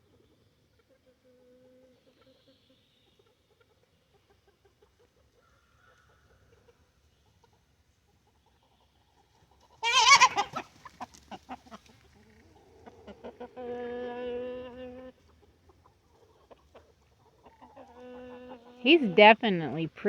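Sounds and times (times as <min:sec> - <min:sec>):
chickens clucking: 0:00.0 - 0:20.0
drawn-out chicken call: 0:00.8 - 0:20.0
chicken squawking: 0:09.8 - 0:11.8.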